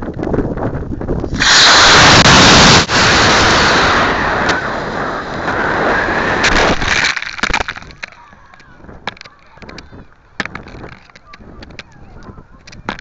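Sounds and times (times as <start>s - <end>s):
model rocket engine hissing: 1.2s - 7.8s.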